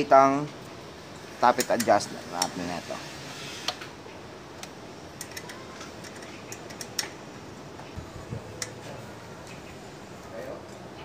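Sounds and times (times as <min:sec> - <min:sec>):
metallic tool clicks: 0:04.6 - 0:07.2.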